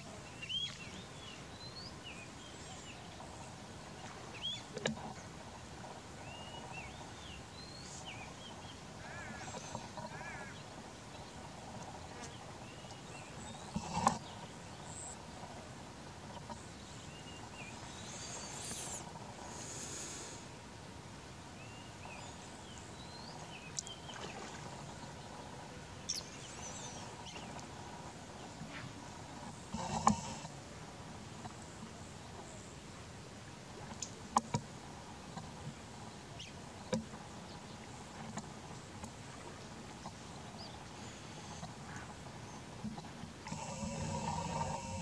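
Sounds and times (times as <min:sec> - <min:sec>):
outdoor background noise: 0:00.0 - 0:45.0
birds chirping: 0:06.2 - 0:15.6, 0:16.2 - 0:20.4, 0:21.6 - 0:30.5, 0:39.4 - 0:45.0.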